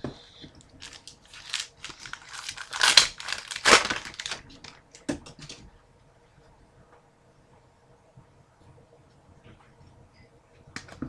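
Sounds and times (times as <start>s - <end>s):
wrapper crinkling and tearing: 0.8s - 5.0s.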